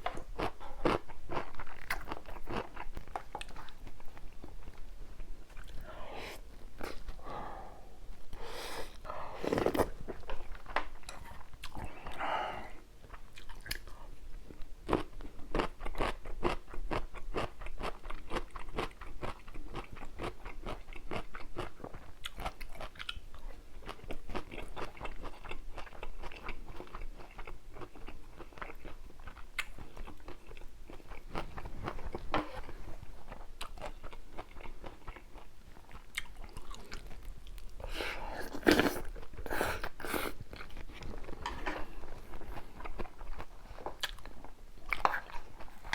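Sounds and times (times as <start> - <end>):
crunchy food chewing: 0.0 - 5.8, 13.1 - 45.9
soft mouth sounds: 5.5 - 10.0, 37.8 - 40.5.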